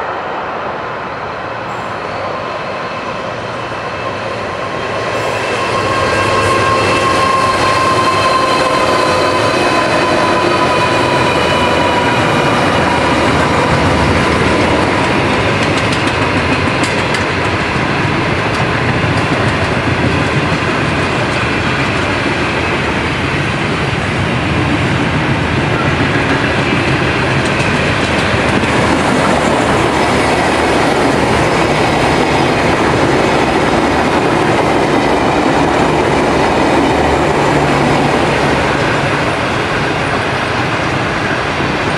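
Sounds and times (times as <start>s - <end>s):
diesel railcar passing: 0.0s - 41.9s
freight train wagons rumbling: 0.0s - 41.9s
high wheel squeal: 4.0s - 13.0s.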